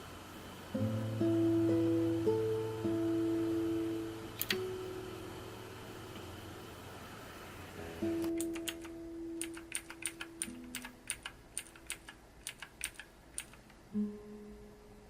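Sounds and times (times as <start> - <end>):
guitar music: 0.7 - 11.1, 13.9 - 15.0
mechanical keyboard key clicks: 8.3 - 13.8.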